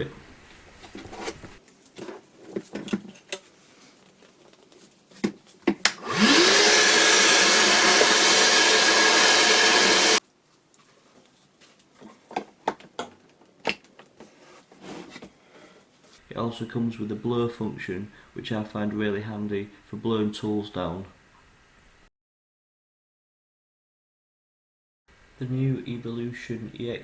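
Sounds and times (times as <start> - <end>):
workshop vacuum motor whining: 6.0 - 10.2.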